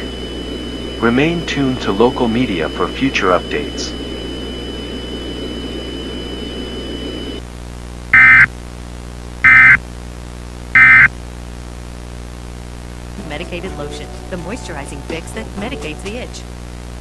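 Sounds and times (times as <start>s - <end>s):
faint high whine: 0.0s - 7.5s, 8.1s - 8.6s, 9.4s - 9.8s, 10.7s - 11.2s
digital data bursts: 8.2s - 8.5s, 9.4s - 9.8s, 10.8s - 11.1s.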